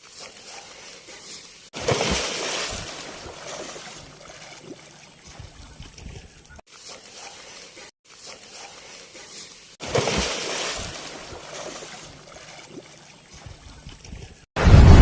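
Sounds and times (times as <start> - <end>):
river water splashing: 0.0 - 14.5.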